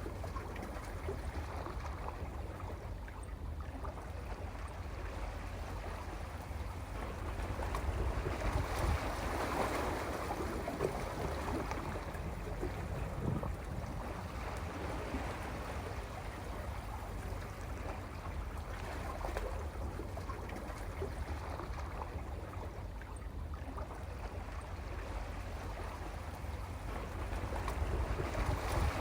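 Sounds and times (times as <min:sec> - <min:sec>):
sea water washing among rocks: 0:27.1 - 0:29.0.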